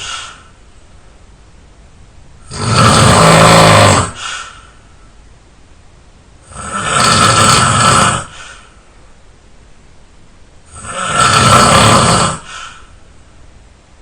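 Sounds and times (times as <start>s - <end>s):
quiet breathing: 0.0s - 0.6s, 4.0s - 5.2s, 8.1s - 9.1s, 12.2s - 13.3s
person snoring: 2.4s - 4.6s, 6.4s - 8.7s, 10.7s - 12.9s.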